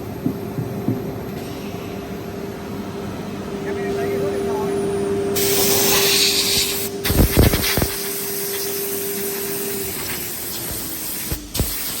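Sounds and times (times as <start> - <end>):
cnc router machine tone: 3.3 - 10.4
hiss of air: 5.4 - 12.0.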